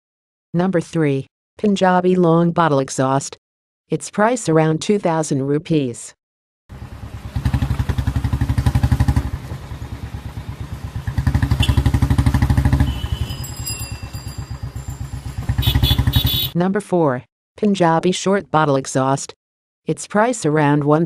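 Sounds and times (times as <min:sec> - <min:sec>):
motorcycle engine idling and revving: 0:06.7 - 0:16.6.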